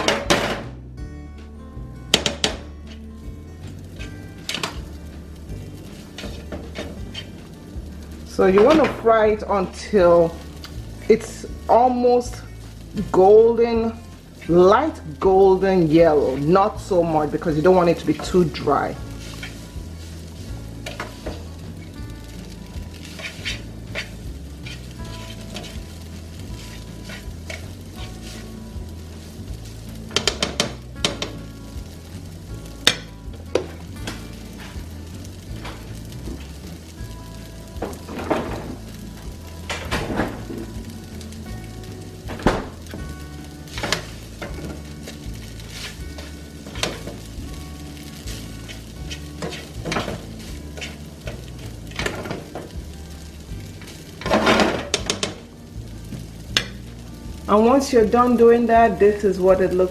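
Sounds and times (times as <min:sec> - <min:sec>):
noodles sizzling in a frying pan: 0:01.8 - 0:59.9
utensil scraping and clinking on pan: 0:05.8 - 0:07.6, 0:13.0 - 0:22.0, 0:22.9 - 0:29.4, 0:43.7 - 0:47.3, 0:48.0 - 0:52.7.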